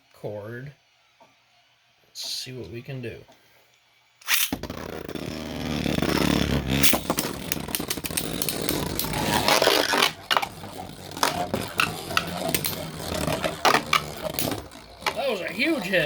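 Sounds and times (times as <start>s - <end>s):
spinning tops clashing: 4.2s - 16.0s
spinning tops whirring and scraping: 4.2s - 16.0s.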